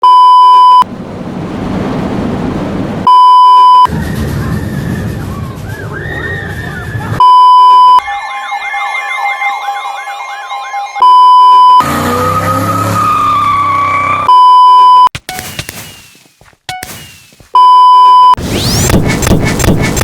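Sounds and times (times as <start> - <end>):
high pure beep tone: 0.0 - 0.9, 3.1 - 3.9, 7.2 - 9.4, 11.0 - 11.8, 14.3 - 15.5, 17.6 - 18.4
loud rushing noise: 0.8 - 3.2
siren wails rising and falling: 1.6 - 15.1
electronic siren cycling quickly: 7.2 - 14.5, 18.4 - 19.0.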